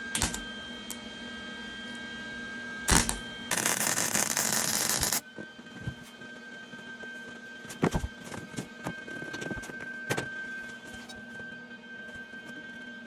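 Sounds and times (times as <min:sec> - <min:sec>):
welding arc crackling: 0:02.9 - 0:05.3.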